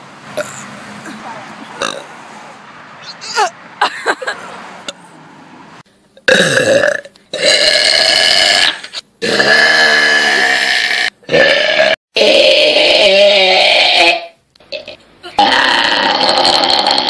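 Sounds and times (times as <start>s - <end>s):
long loud burps: 6.3s - 17.0s.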